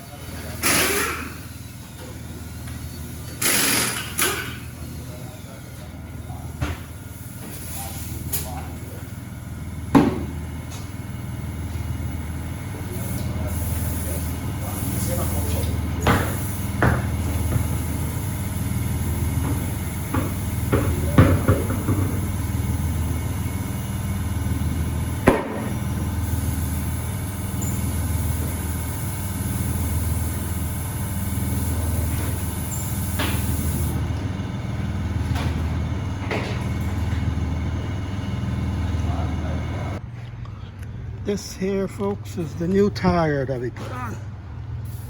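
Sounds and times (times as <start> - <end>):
shop machinery humming: 0.0 - 45.0
sharp knocks and clanks: 9.9 - 10.9, 15.9 - 18.2, 19.2 - 23.1, 25.2 - 25.9.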